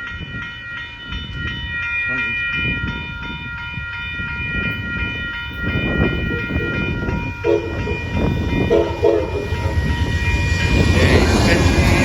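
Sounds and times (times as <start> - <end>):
crossing bell ringing: 0.0 - 12.0
train rumble and wheel noise: 0.0 - 12.0
locomotive horn blast: 7.4 - 9.8.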